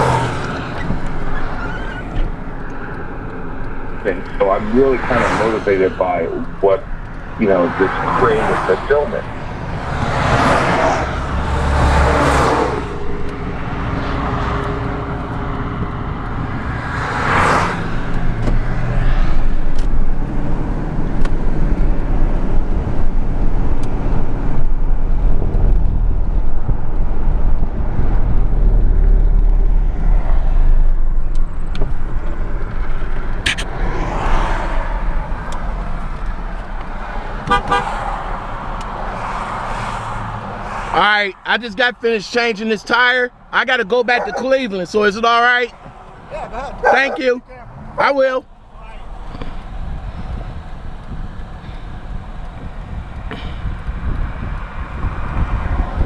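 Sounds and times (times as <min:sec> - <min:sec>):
steady low rumble: 0:00.0 - 0:17.1, 0:17.9 - 0:34.0, 0:45.6 - 0:56.0
highway traffic passing: 0:00.0 - 0:56.0.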